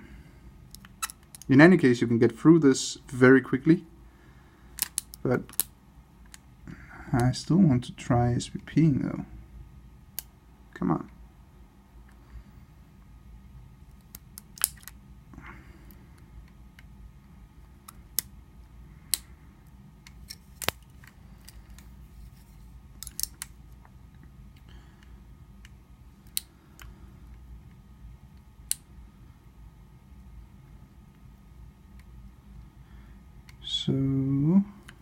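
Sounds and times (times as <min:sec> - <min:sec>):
faint low hum: 0:00.0 - 0:35.0
lock pick metallic clicks: 0:14.0 - 0:15.0.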